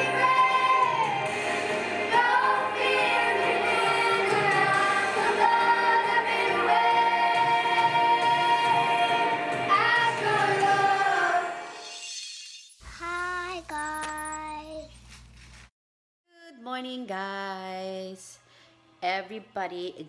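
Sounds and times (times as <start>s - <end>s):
song with sung vocals: 0.0s - 11.9s.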